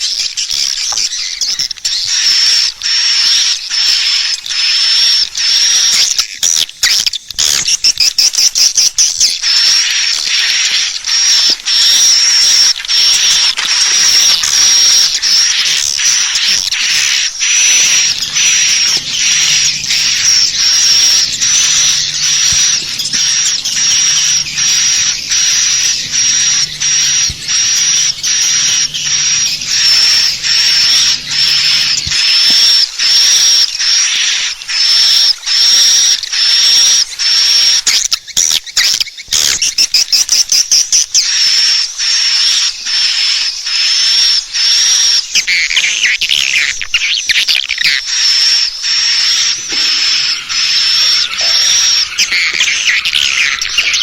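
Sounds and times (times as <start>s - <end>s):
swiftlet high chirps: 9.4s - 37.8s, 48.6s - 54.0s.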